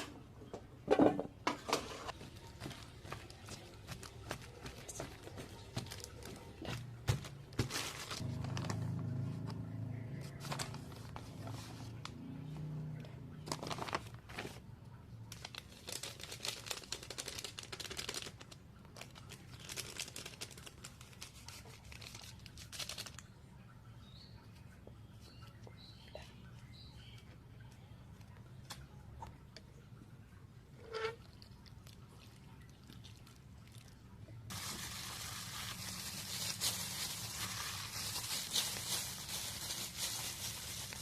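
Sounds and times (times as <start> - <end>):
low hum: 8.1 - 11.5.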